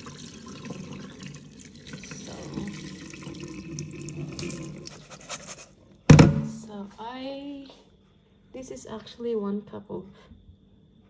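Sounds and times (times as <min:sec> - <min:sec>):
tap water splashing into pot: 0:00.0 - 0:04.9.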